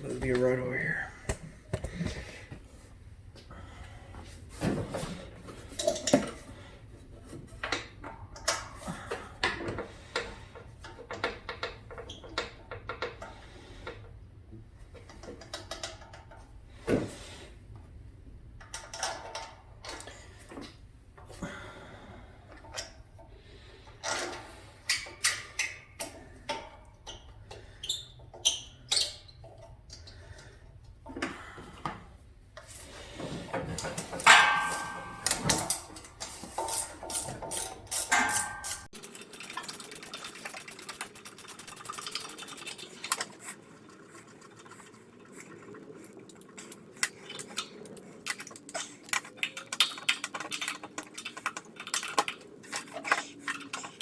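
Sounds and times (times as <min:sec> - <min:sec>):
metal scraping and rattling: 0:33.1 - 0:39.2
metal tools clinking and tapping: 0:33.5 - 0:39.2.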